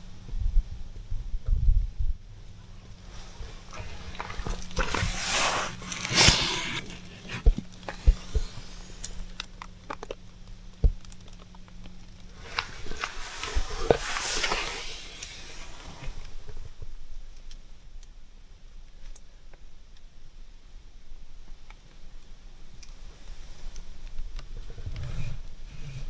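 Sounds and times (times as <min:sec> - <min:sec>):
faint low hum: 0:00.0 - 0:26.0
rustling: 0:02.9 - 0:10.2, 0:11.0 - 0:17.6.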